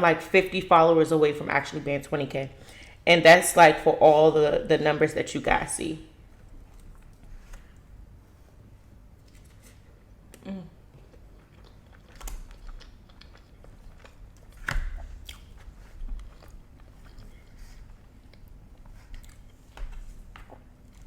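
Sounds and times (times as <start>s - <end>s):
voice humming: 10.4s - 10.9s
chewing crunchy food: 10.9s - 21.0s.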